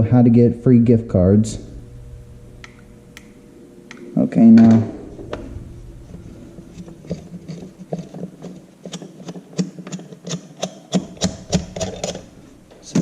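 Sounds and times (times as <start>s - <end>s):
steady low hum: 0.0s - 10.2s, 11.0s - 13.0s
plastic parts clicking and tapping: 7.1s - 12.2s.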